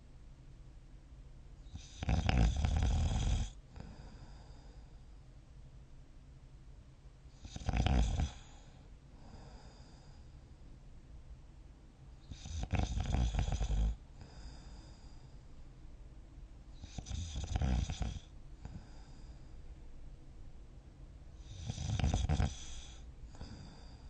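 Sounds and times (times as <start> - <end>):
person snoring: 1.8 - 4.8, 7.4 - 10.2, 12.3 - 15.2, 16.8 - 19.4, 21.4 - 24.0
soft breathing: 3.6 - 5.3, 8.3 - 10.8, 14.0 - 15.8, 18.2 - 20.0, 21.3 - 24.0.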